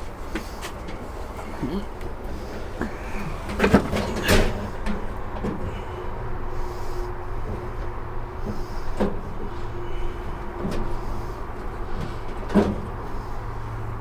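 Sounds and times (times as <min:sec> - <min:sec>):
steady low hum: 0:00.0 - 0:14.0
metal tool chest knocks and clunks: 0:03.4 - 0:05.6.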